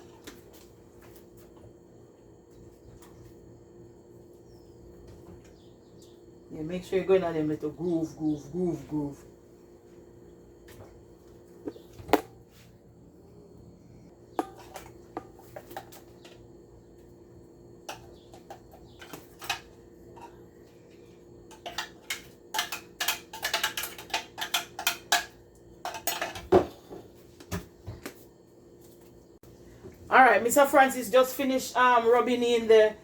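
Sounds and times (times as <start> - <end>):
dishes and utensils clinking: 21.5 - 27.0.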